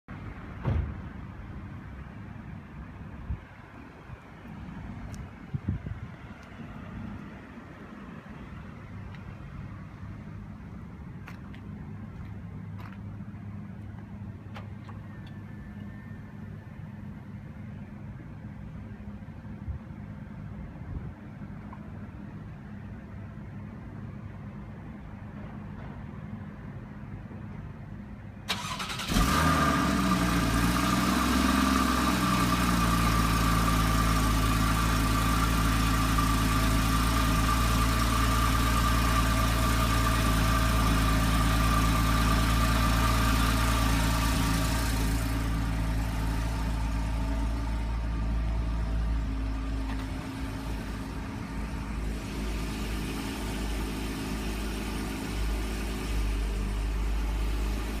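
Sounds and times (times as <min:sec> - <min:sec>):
car engine starting and idling: 0:28.4 - 0:58.0.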